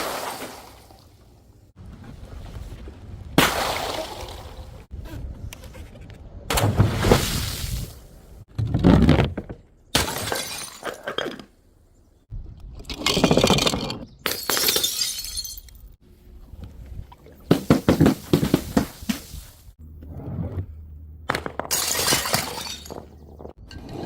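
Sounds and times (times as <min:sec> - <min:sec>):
glass bottles smashing: 0:10.0 - 0:11.2, 0:13.1 - 0:16.0, 0:21.6 - 0:23.2.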